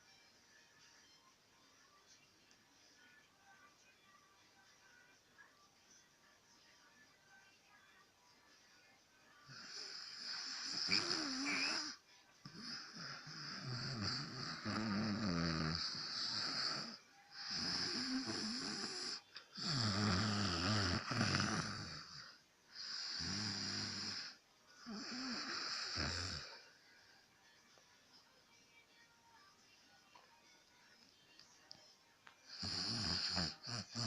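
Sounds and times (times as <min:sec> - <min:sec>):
man snoring: 0:09.5 - 0:26.6, 0:32.5 - 0:34.0.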